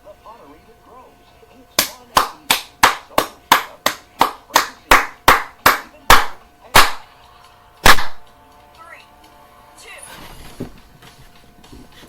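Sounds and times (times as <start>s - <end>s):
loud single clap: 1.8s - 7.0s, 7.8s - 8.2s
hands clapping: 1.8s - 7.1s, 7.8s - 8.2s.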